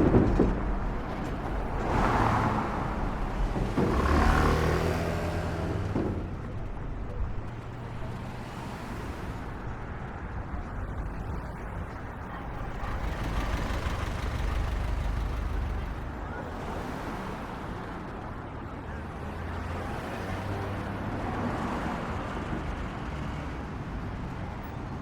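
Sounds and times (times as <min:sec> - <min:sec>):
low traffic rumble: 0:00.0 - 0:25.0
vehicle swishing past: 0:01.0 - 0:06.3
heavy engine steady note: 0:02.7 - 0:19.7.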